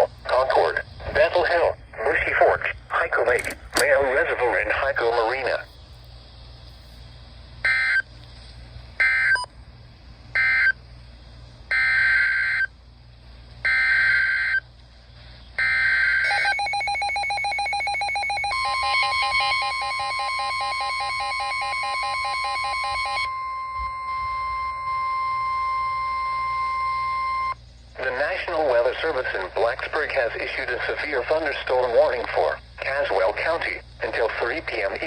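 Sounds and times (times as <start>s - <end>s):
digital data squawks: 16.2s - 23.3s
rapid electronic beeping: 16.2s - 27.4s.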